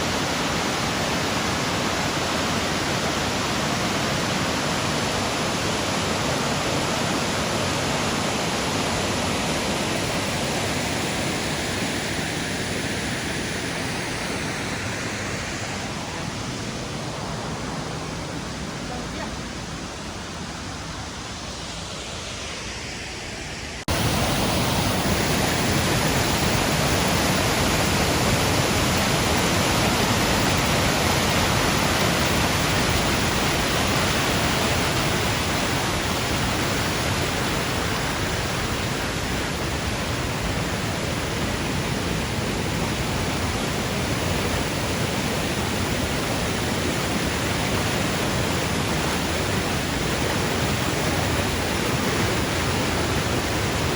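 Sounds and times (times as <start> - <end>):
waterfall rushing: 0.0 - 53.9.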